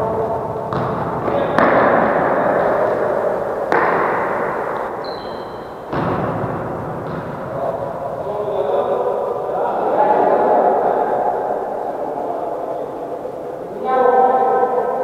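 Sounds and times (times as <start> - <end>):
echo ringing through hall: 0.0 - 15.0
football being kicked: 0.7 - 2.0, 5.9 - 6.4.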